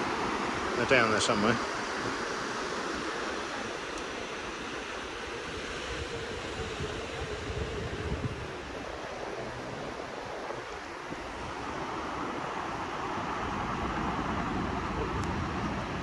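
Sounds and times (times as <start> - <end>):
sea surf: 0.0 - 16.0
wind buffeting microphone: 0.0 - 16.0.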